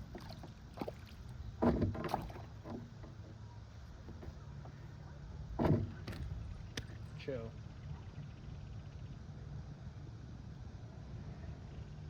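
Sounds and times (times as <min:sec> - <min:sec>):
knocks and rattles in kayak: 0:00.0 - 0:04.8, 0:05.4 - 0:06.8.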